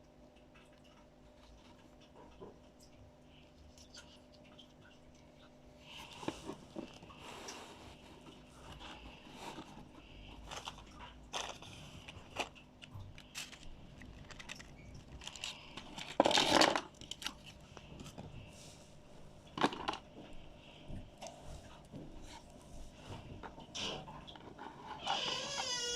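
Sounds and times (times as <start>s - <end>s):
packaging clicks and rustles: 8.7s - 18.3s, 19.5s - 20.1s
packaging crinkling crunch: 9.4s - 18.2s.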